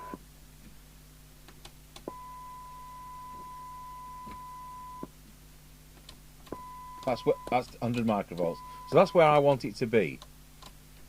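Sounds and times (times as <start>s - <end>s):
steady test tone from speaker: 0.0s - 0.2s, 2.1s - 5.1s, 6.5s - 9.5s
low steady hum: 0.0s - 11.0s.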